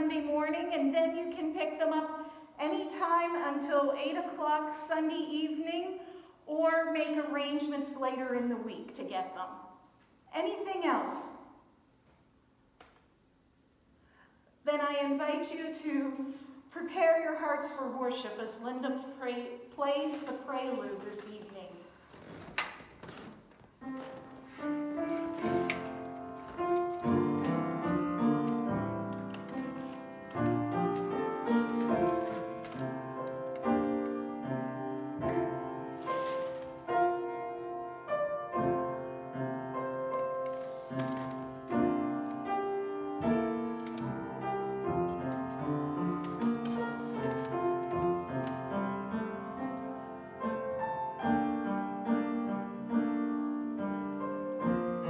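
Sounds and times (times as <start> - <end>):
slow piano piece: 22.0 - 55.0.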